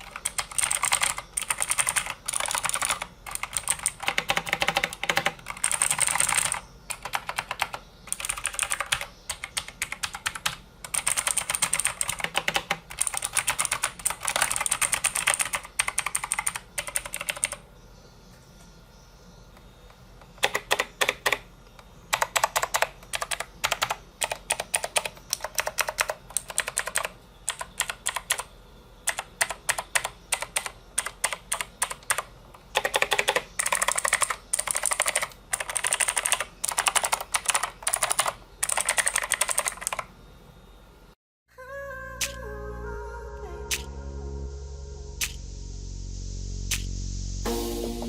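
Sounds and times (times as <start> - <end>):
mechanical keyboard clicking: 0.0 - 17.6, 20.4 - 21.4, 22.1 - 28.5, 29.1 - 40.1.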